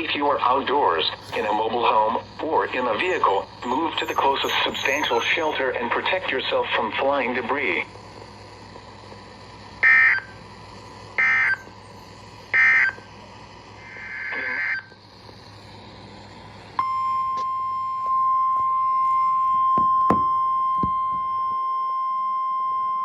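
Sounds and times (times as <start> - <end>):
buzzy digital data tones: 1.2 - 6.6
steady alert tone: 2.6 - 5.8.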